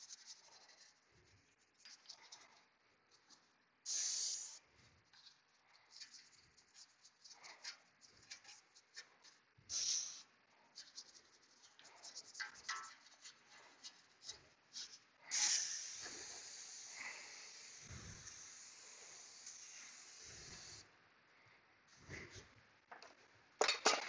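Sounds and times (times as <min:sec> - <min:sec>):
aerosol spray hissing: 0:03.9 - 0:04.6, 0:09.7 - 0:10.3, 0:15.3 - 0:20.8.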